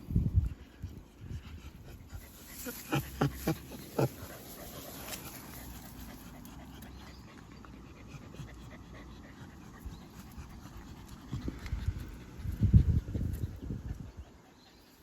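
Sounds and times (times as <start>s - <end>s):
dog panting: 0.4s - 15.0s.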